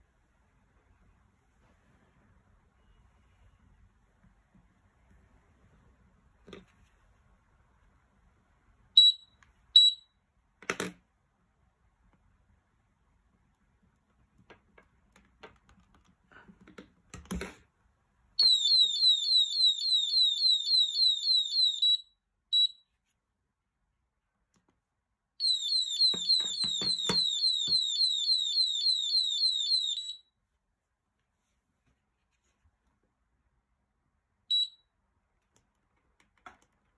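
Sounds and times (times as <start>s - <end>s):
high falling alarm chirps: 18.4s - 22.0s, 25.4s - 30.3s.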